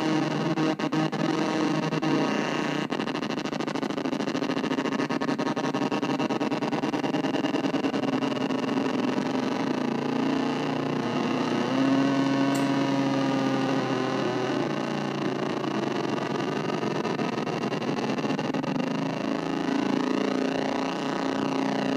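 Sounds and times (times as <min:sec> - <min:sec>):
distorted synthesizer drone: 0:00.0 - 0:21.9.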